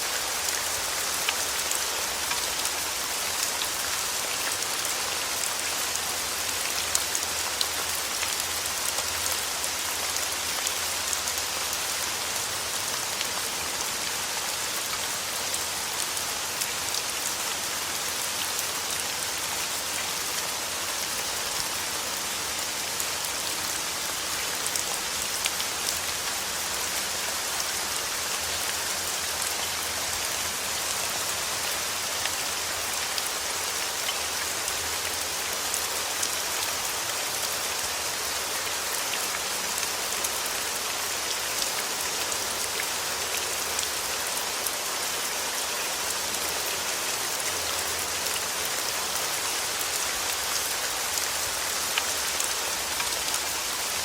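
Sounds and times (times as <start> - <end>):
steady rain hiss: 0.0 - 54.0
raindrops ticking on surface: 49.7 - 54.0.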